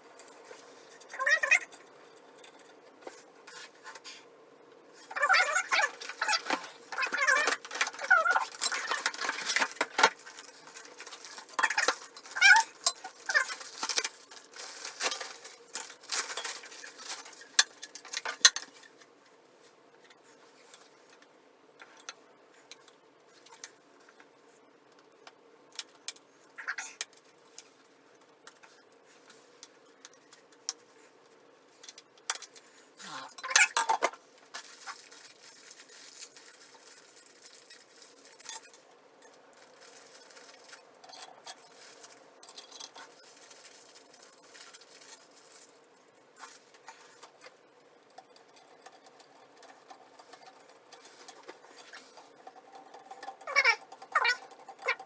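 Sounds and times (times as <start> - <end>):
small metal tools clinking: 5.2 - 18.9.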